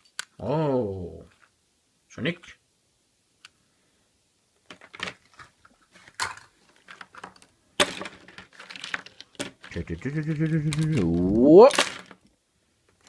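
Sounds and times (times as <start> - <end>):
plastic egg clicking and crinkling: 6.1 - 11.1.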